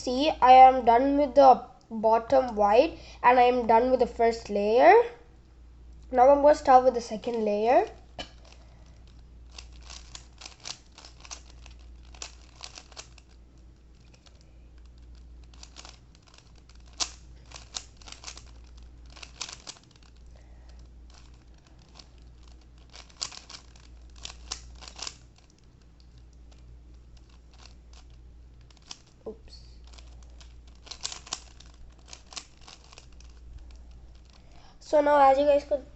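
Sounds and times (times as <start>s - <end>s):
low hum: 2.5s - 35.9s
puzzle cube plastic clicking: 8.3s - 29.2s, 29.8s - 34.5s.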